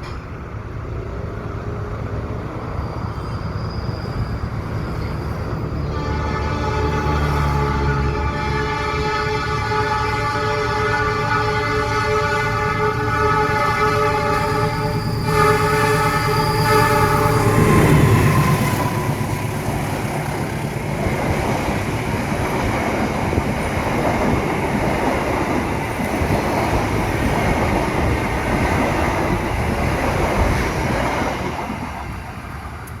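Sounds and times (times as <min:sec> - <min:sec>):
train wheels rushing on rails: 0:00.0 - 0:33.0
train horn: 0:05.8 - 0:19.7.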